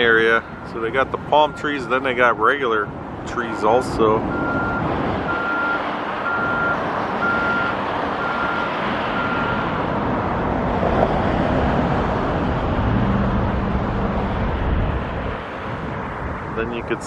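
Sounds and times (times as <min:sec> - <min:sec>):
low engine hum: 0:00.0 - 0:17.0
traffic noise: 0:00.0 - 0:17.0
vehicle reversing alarm beeps: 0:00.4 - 0:02.0, 0:04.3 - 0:09.7.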